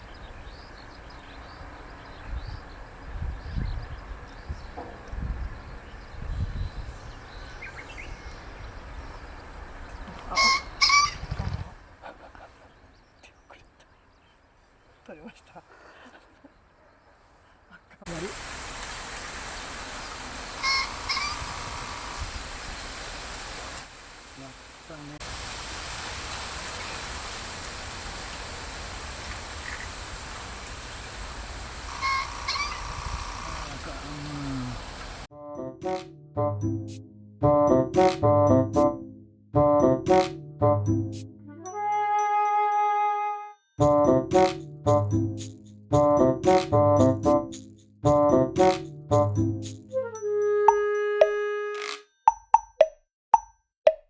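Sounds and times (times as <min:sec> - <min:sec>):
wind rumble on microphone: 0:01.4 - 0:12.0, 0:21.0 - 0:23.0, 0:32.4 - 0:34.0
pheasant crowing: 0:10.0 - 0:12.4, 0:20.6 - 0:22.2, 0:31.9 - 0:33.7
wing beats drumming: 0:43.8 - 0:49.9.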